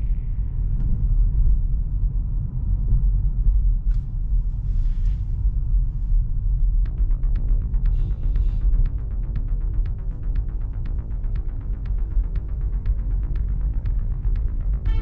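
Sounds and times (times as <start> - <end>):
road and tyre rumble in car: 0.0 - 6.9
music with ticking beat: 6.6 - 15.0.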